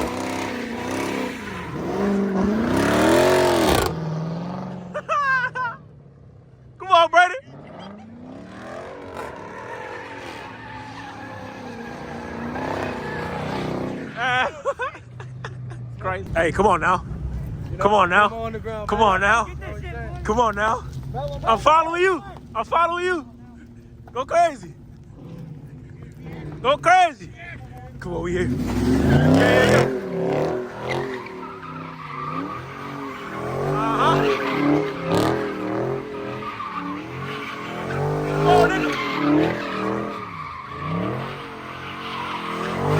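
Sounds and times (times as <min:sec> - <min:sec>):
tyres squealing: 0:00.0 - 0:03.9, 0:08.5 - 0:14.9, 0:18.9 - 0:42.9
car engine revving: 0:00.0 - 0:05.1, 0:07.4 - 0:42.9.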